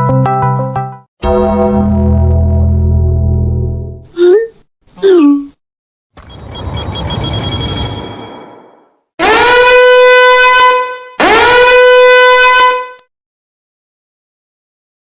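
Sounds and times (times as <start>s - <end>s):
long horn blasts: 9.2s - 13.1s.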